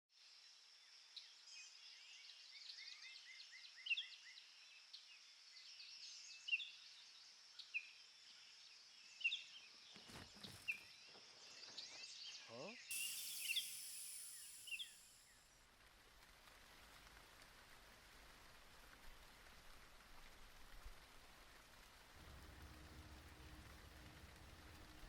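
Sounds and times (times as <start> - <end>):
faint high hiss: 12.6 - 16.0, 22.1 - 25.0
birds chirping and whistling: 12.9 - 15.3.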